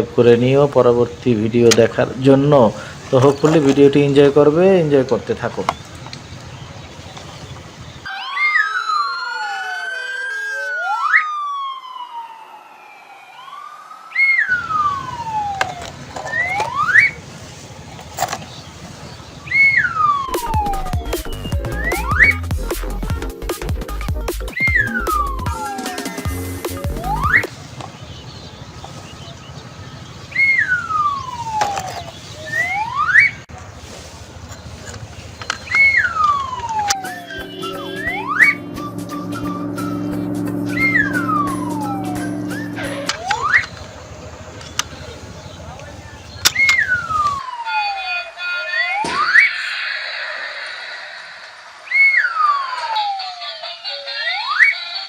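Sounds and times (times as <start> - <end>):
electronic toy siren: 8.1 - 17.2, 19.5 - 22.5, 24.6 - 27.5, 30.4 - 33.4, 35.4 - 44.9, 46.6 - 55.0
steady low hum: 36.8 - 44.5.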